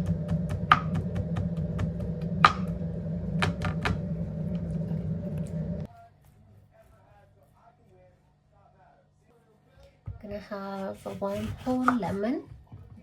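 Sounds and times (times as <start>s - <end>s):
steady low hum: 0.0s - 5.9s.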